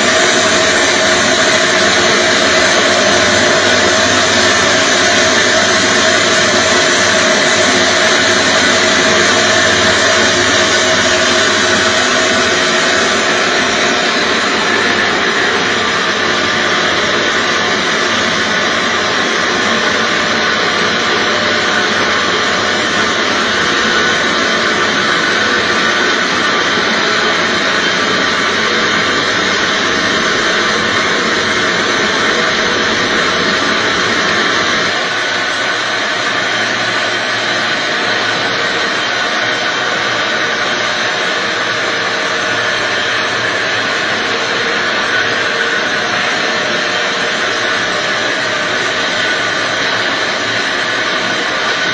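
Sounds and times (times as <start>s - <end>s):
seed coring machine running: 0.0s - 51.9s.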